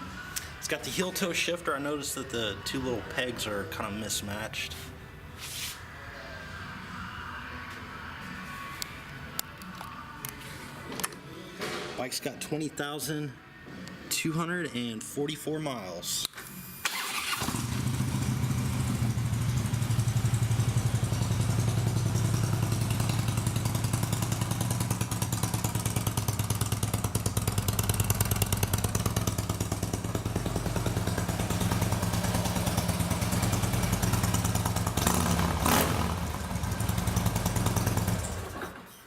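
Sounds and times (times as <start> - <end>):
motorcycle engine idling: 17.4 - 38.6.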